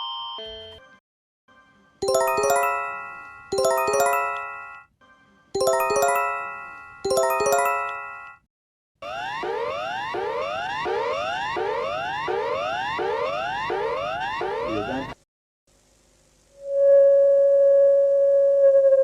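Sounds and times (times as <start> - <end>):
bell-like electronic chimes: 2.0 - 4.8, 5.6 - 8.4.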